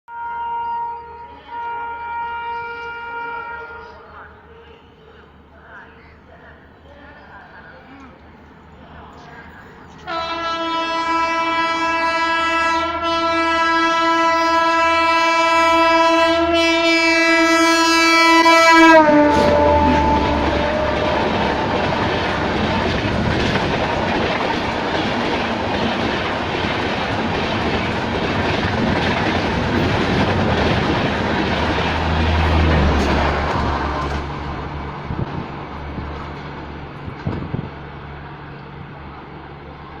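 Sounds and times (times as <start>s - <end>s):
train horn chord: 0.1s - 4.0s, 10.1s - 22.0s
train coaches roaring past: 0.1s - 40.0s.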